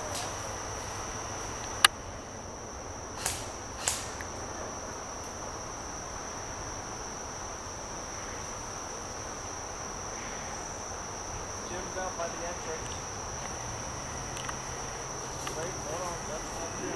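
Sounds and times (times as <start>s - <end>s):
insects buzzing: 0.0s - 16.9s.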